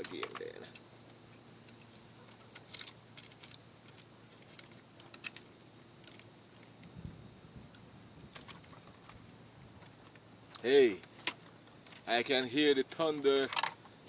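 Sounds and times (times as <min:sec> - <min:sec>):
high-pitched insect chirring: 0:00.0 - 0:14.0.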